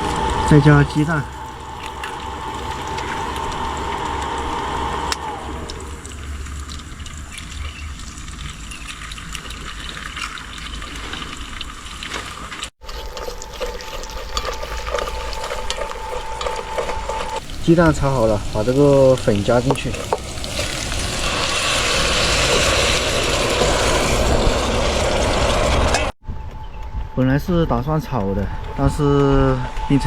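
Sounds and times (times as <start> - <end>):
steady high hum: 0.0 - 7.2, 12.8 - 19.0
eggs sizzling in a pan: 0.0 - 26.2.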